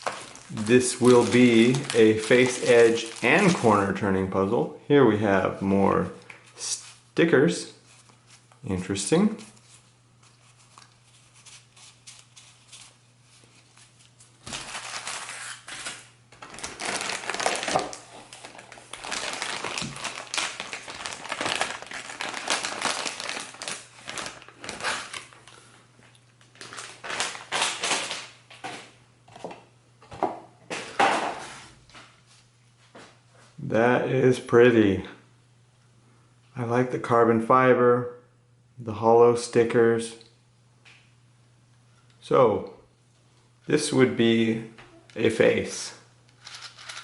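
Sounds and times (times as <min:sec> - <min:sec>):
packaging crinkling: 0:00.0 - 0:03.8, 0:09.4 - 0:28.7, 0:46.4 - 0:47.0.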